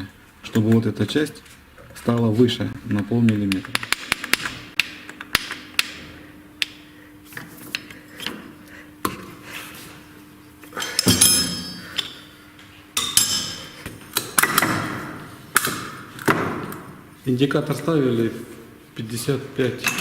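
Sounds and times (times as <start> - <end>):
metal clinking and ringing: 10.8 - 12.2.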